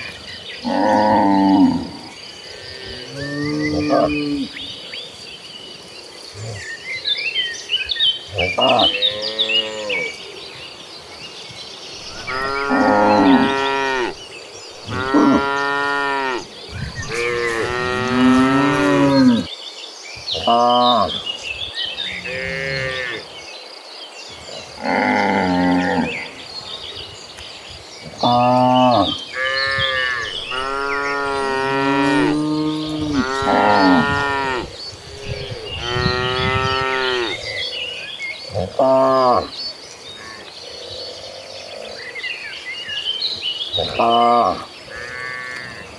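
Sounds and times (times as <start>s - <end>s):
cow's lower moo: 0.6s - 4.6s, 12.1s - 14.2s, 14.8s - 19.5s, 22.1s - 23.2s, 24.8s - 26.3s, 28.2s - 37.6s
cows mooing: 0.6s - 4.6s, 12.1s - 14.2s, 14.8s - 19.5s, 22.1s - 23.2s, 24.8s - 26.3s, 28.2s - 37.6s, 43.8s - 45.9s.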